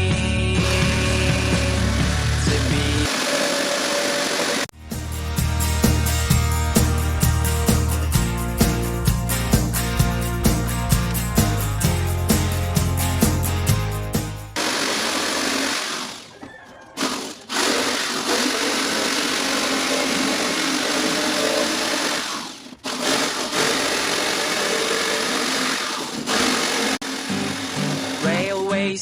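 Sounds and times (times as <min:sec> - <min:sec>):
electric power tool whirring: 0:00.6 - 0:04.7, 0:14.6 - 0:16.3, 0:17.0 - 0:28.5.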